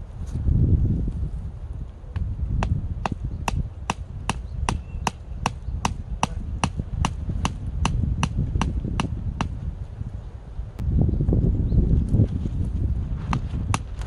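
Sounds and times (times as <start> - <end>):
blade chopping firewood: 2.2 - 9.6, 13.2 - 14.0.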